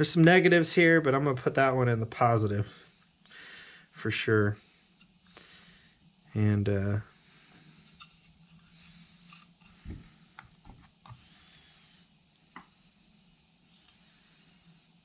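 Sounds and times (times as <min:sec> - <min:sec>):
low steady hiss: 0:00.0 - 0:15.0
soft thump: 0:09.9 - 0:10.1.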